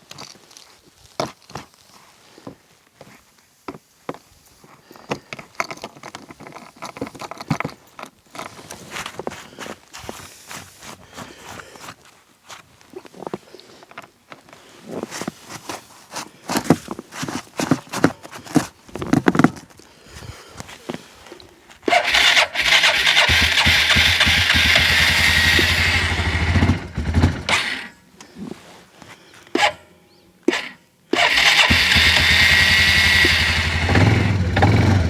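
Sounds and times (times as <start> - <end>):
engine starter cranking: 21.9 - 27.9, 29.6 - 29.8, 30.5 - 35.0.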